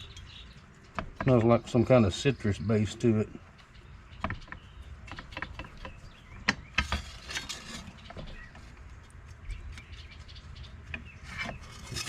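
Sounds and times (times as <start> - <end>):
rustling scrape: 6.8 - 8.5, 11.2 - 12.0.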